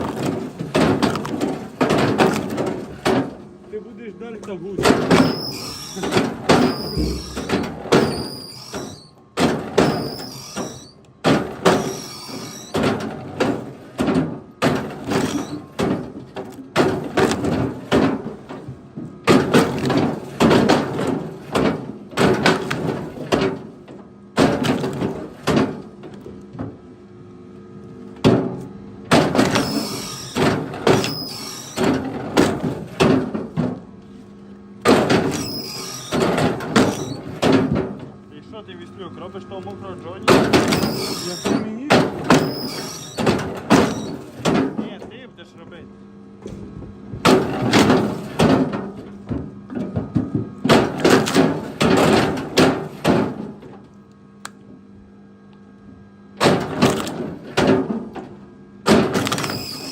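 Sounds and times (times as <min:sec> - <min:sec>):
wooden knocks and thuds: 0:04.8 - 0:12.0.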